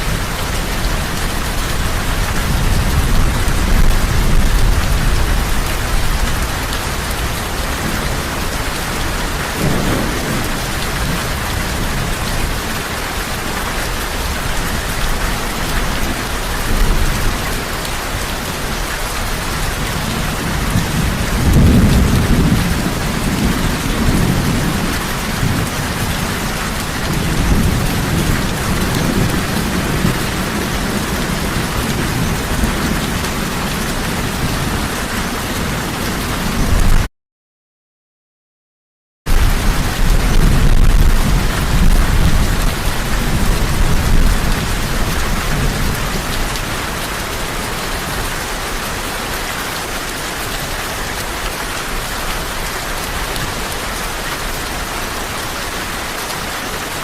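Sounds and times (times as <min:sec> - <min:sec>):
thunder rumbling: 0:00.0 - 0:17.6, 0:18.7 - 0:37.1, 0:39.3 - 0:47.0
heavy rain: 0:00.0 - 0:37.1, 0:39.3 - 0:57.0.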